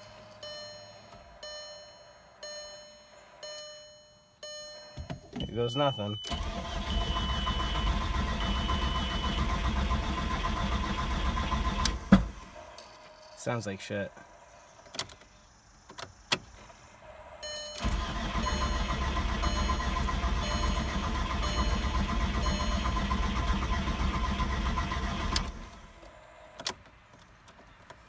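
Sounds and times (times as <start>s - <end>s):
car engine turning over: 6.3s - 12.8s, 17.4s - 26.7s.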